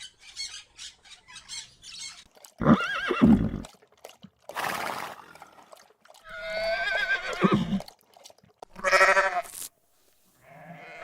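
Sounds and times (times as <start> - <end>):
horse neighing: 2.6 - 3.6, 6.3 - 7.8
horse snorting: 2.6 - 3.7.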